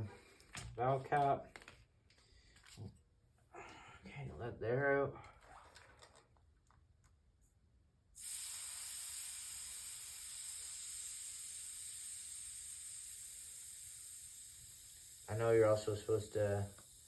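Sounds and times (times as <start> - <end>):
air hissing from tire valve: 8.1 - 17.0.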